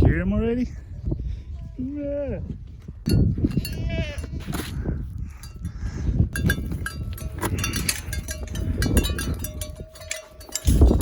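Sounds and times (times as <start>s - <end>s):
goats and sheep bleating: 3.5s - 4.7s
quick clinks and rattles: 6.4s - 11.0s.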